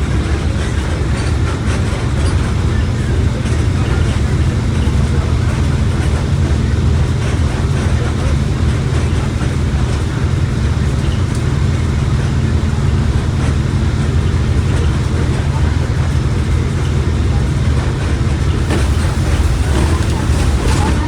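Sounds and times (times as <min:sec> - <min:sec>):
bus diesel engine rumbling: 0:18.4 - 0:21.0
road noise: 0:18.6 - 0:21.0.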